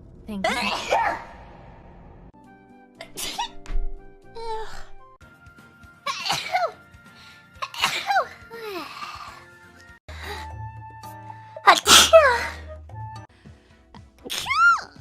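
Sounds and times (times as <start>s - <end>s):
soft background music: 2.4s - 15.0s
women sneezing: 6.1s - 6.8s, 11.7s - 12.6s.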